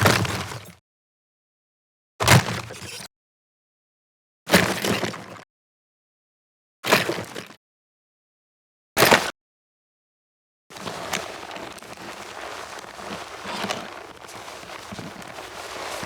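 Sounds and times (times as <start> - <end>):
armoured footsteps: 10.7 - 16.0
gritty scuffing: 10.7 - 16.0.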